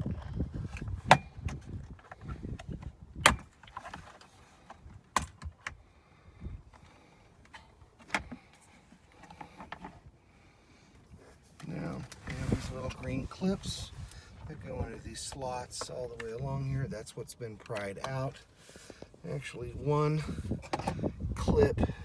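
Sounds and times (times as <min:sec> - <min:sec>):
handling rustle: 0:00.0 - 0:05.8, 0:06.6 - 0:10.3, 0:10.9 - 0:16.8.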